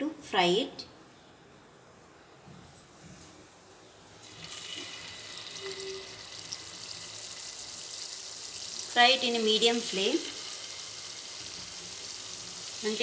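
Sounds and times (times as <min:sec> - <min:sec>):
batter frying in hot oil: 0:04.2 - 0:13.0.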